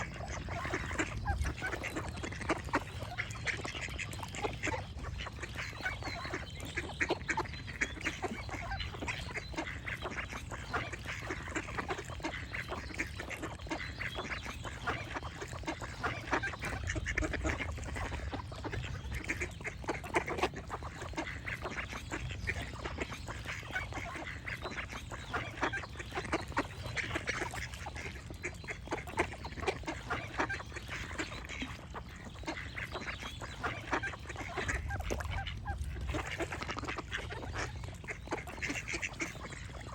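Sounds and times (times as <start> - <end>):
ducks quacking: 0.0 - 39.9
steady low rumble: 34.4 - 38.7.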